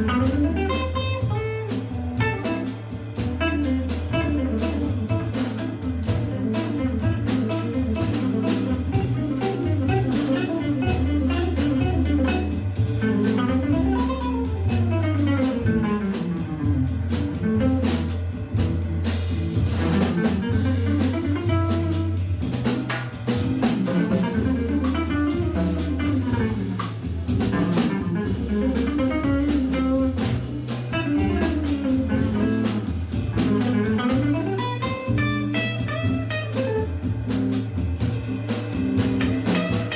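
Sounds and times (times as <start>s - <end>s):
drums and cymbals keeping time: 0.0s - 39.9s
guitar: 0.0s - 39.9s
low bass line: 0.0s - 39.9s.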